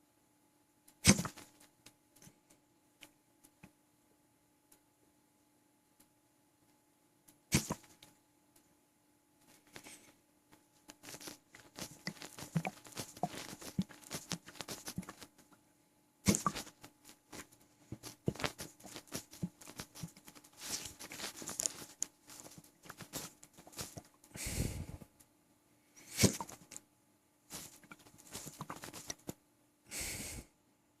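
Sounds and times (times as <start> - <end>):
stomach gurgling and sloshing: 11.0 - 15.4, 16.3 - 25.1, 26.1 - 26.7, 27.6 - 29.3.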